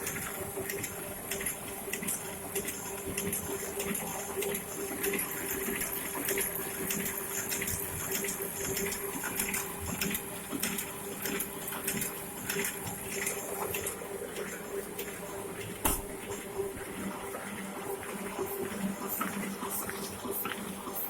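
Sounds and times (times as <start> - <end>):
printing press clicking and clatter: 0.0 - 16.5
printing press humming: 0.0 - 21.0.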